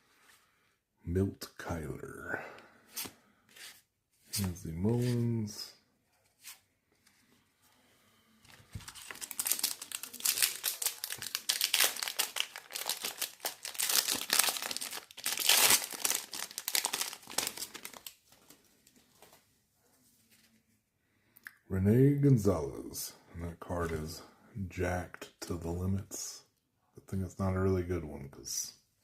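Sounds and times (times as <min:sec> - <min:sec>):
wrapper crinkling and tearing: 0:08.5 - 0:18.5.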